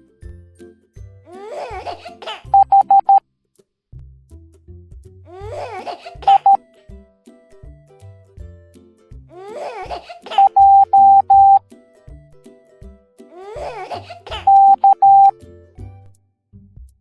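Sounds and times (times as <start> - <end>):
bouncy children's music: 0.0 - 16.2
morse code beeps: 2.6 - 3.2, 6.2 - 6.6, 10.4 - 11.6, 14.4 - 15.3
cartoon giggling: 5.4 - 6.5, 9.5 - 11.0.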